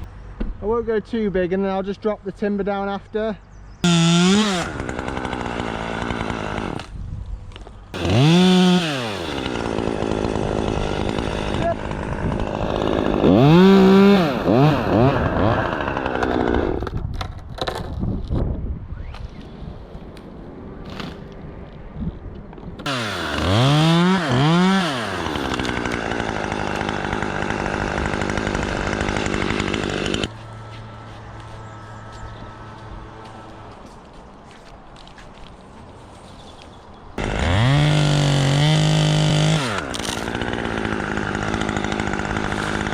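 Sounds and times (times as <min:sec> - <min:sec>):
chainsaw idling and revving: 0:03.8 - 0:06.9, 0:07.9 - 0:17.0, 0:22.8 - 0:30.6, 0:37.2 - 0:42.9
faint engine hum: 0:30.2 - 0:37.1.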